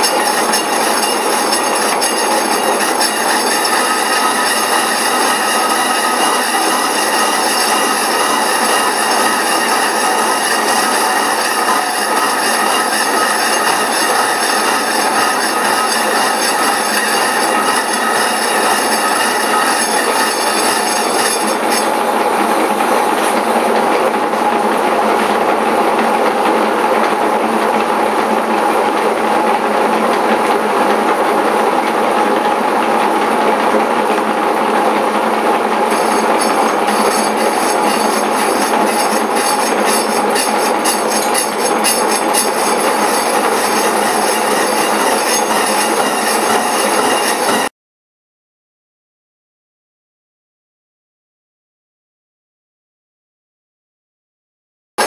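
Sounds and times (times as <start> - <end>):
machine cutter screeching through metal: 0.0 - 23.7, 35.9 - 47.7.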